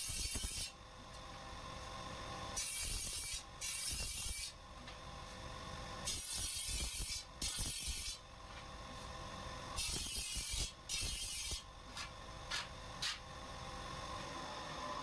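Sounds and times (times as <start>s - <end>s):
grinder grinding steel blade: 0.0s - 0.8s, 2.6s - 4.6s, 6.1s - 8.2s, 9.8s - 11.7s.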